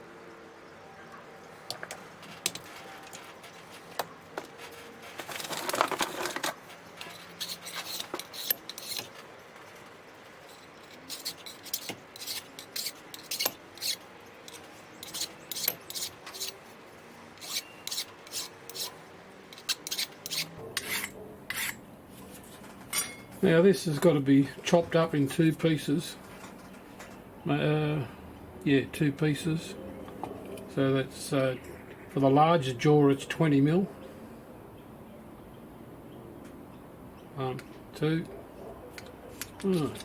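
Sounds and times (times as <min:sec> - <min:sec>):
light metallic clicks and scrapes: 0:01.7 - 0:16.6, 0:38.9 - 0:40.0
rasping scrape on metal: 0:07.0 - 0:09.2, 0:10.4 - 0:16.6, 0:17.4 - 0:21.8.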